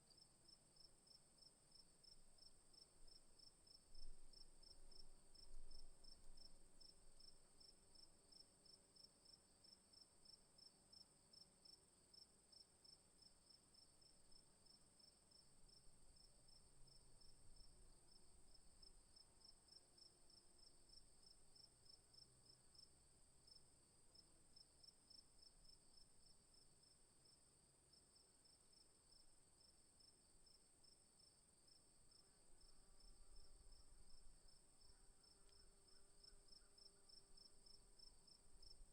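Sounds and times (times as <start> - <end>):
crickets chirping: 28.4 - 38.9.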